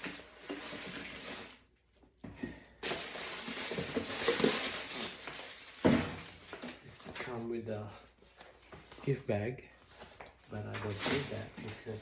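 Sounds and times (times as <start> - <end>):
tissue paper rustling: 2.8 - 7.4.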